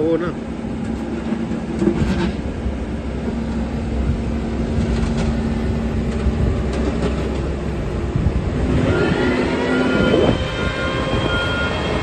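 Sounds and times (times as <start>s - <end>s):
diesel excavator engine running: 0.0s - 12.0s.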